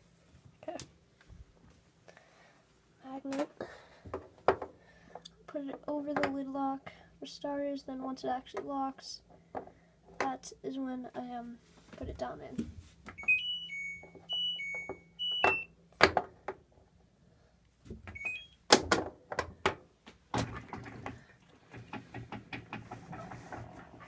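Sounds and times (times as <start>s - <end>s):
washer start-up beeping tune: 13.2s - 15.7s, 18.2s - 18.6s
sharp clicks and knocks: 21.7s - 24.0s.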